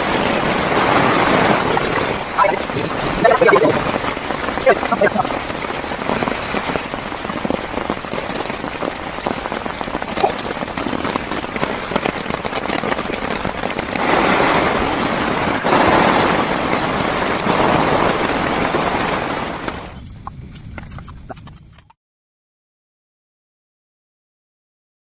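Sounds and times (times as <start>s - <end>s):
heavy rain on plastic shelter: 0.0s - 19.9s.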